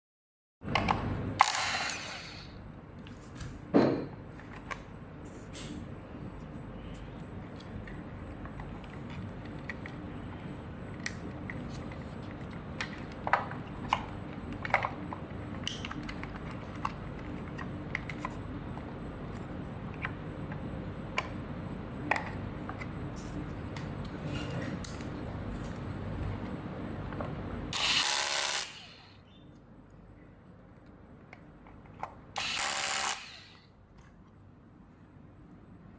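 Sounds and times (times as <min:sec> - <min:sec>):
steady low hum: 0:00.6 - 0:35.9
plastic parts clicking and knocking: 0:10.9 - 0:21.4.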